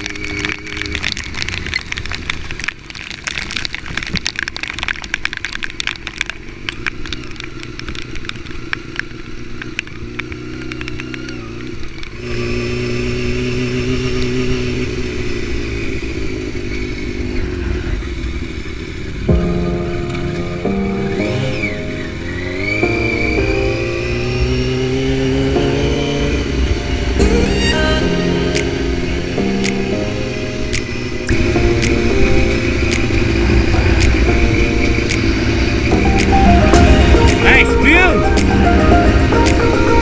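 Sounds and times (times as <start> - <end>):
motorcycle engine running: 0.0 - 2.9, 4.5 - 40.0
rapid crackle of clicks: 0.0 - 12.4, 29.6 - 30.0, 30.6 - 40.0.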